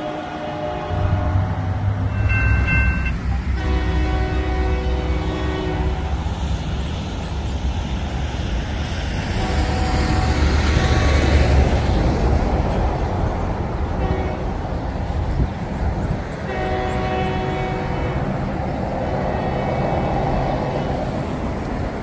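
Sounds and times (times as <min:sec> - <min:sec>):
train air horn chords: 0:00.0 - 0:06.3, 0:09.3 - 0:11.2, 0:16.5 - 0:18.4
low train rumble: 0:00.0 - 0:22.0.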